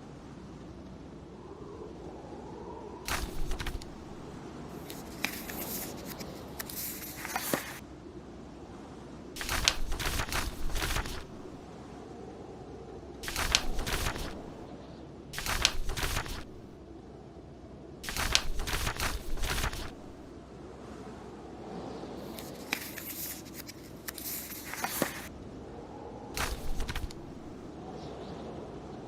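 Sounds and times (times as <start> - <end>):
blizzard wind: 0.0 - 29.0
book pages turning: 3.1 - 7.8, 9.4 - 11.6, 13.2 - 14.6, 15.4 - 16.8, 18.0 - 20.3, 22.3 - 25.3, 26.4 - 27.7.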